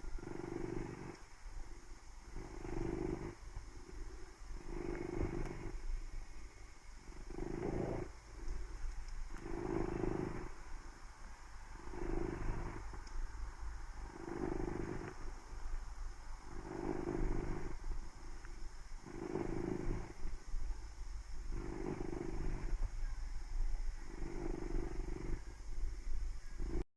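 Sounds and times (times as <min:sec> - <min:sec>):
cat purring snore: 0:00.0 - 0:01.3, 0:02.3 - 0:05.8, 0:07.0 - 0:10.6, 0:11.7 - 0:13.1, 0:14.0 - 0:15.4, 0:16.4 - 0:18.4, 0:19.0 - 0:20.4, 0:21.4 - 0:22.9, 0:24.0 - 0:25.6, 0:26.5 - 0:26.8.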